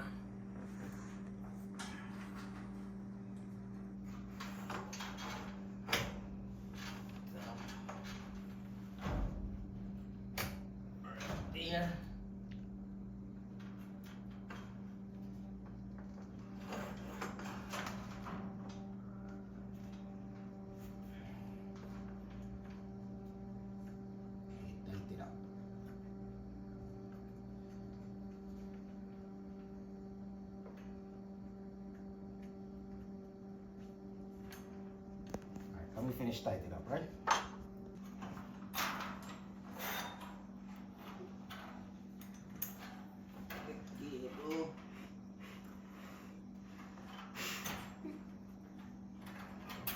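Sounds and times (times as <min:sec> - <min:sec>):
steady electrical hum: 0:00.0 - 0:49.9
garage door spring scraping: 0:16.5 - 0:18.4, 0:37.3 - 0:48.1
metal scraping on metal: 0:39.6 - 0:40.4.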